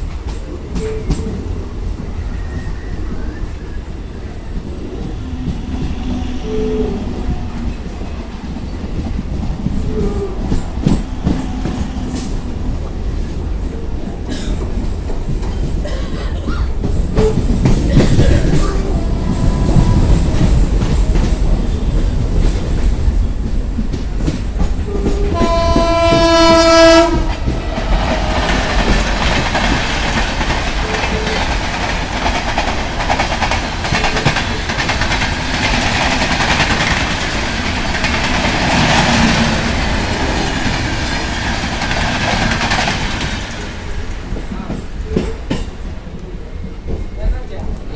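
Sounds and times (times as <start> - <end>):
rushing noise: 0.0 - 14.4, 27.0 - 44.4
train rumbling: 0.0 - 47.9
wheels rattling over rail joints: 0.0 - 47.9
train horn blast: 24.9 - 27.6.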